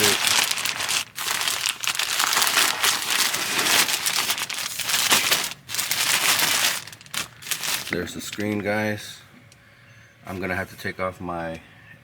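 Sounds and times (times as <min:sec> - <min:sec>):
plastic packaging crinkling: 0:00.0 - 0:08.7.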